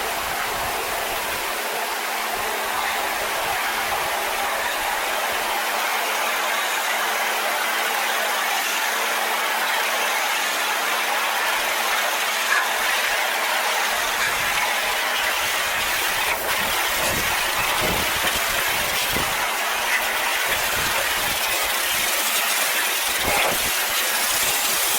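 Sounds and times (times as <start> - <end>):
pressure washer motor hum: 10.7 - 24.9
pressure washer jet spraying tin: 13.8 - 24.9.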